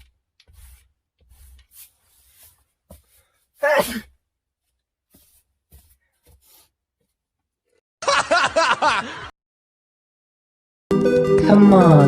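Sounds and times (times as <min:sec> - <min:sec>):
man laughing: 0:08.0 - 0:09.3.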